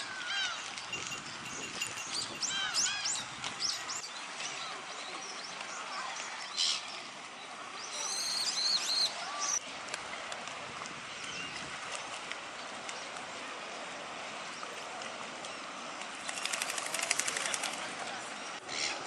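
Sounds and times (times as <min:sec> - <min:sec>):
small songbirds chirping: 0:00.2 - 0:09.6
steady background noise: 0:02.4 - 0:19.0.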